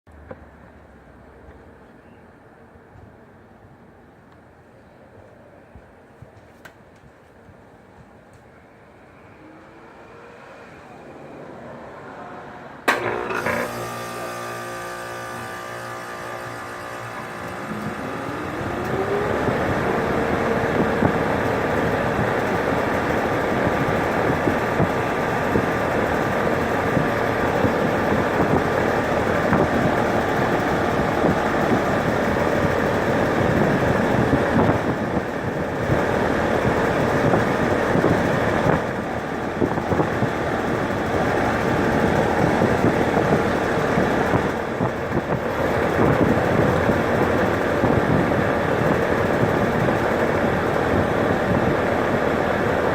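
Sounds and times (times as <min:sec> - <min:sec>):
air conditioner running: 0:12.9 - 0:52.9.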